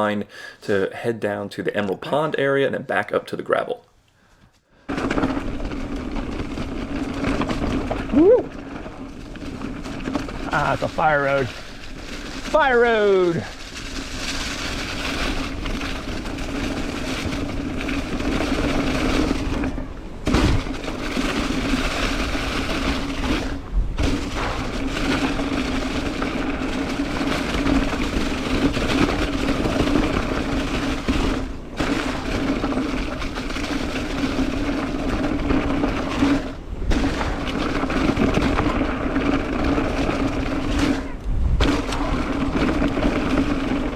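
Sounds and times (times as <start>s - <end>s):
bike tyres on gravel: 4.3s - 43.9s
wind rush: 34.8s - 43.9s.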